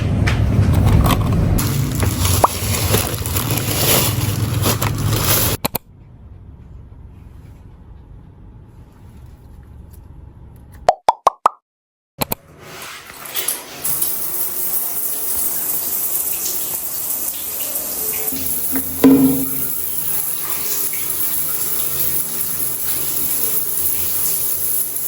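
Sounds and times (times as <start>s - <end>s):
tap water running into sink: 13.2s - 25.0s.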